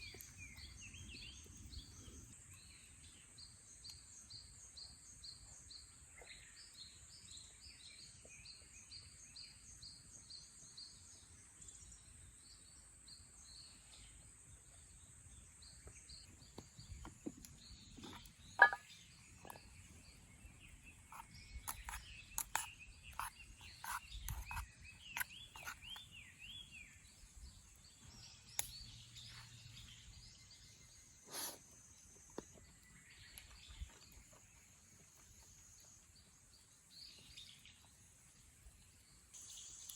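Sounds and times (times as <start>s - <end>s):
birds chirping: 15.4s - 38.0s.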